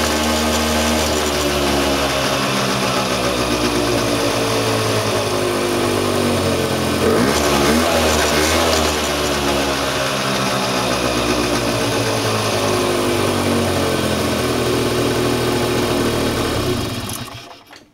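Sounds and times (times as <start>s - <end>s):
small car engine idling: 0.0s - 17.8s.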